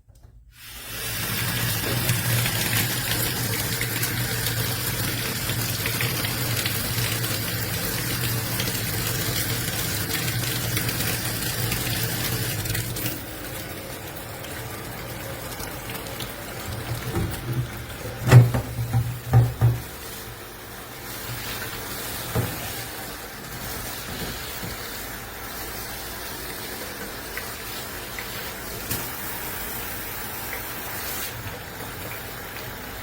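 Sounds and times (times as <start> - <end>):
water running into sink: 0.6 - 33.0
dull knocks: 18.3 - 20.0.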